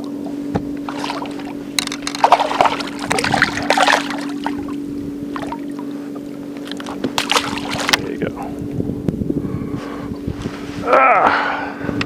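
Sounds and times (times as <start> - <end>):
water splashing and sloshing: 0.0 - 8.3
steady hum: 0.0 - 12.0.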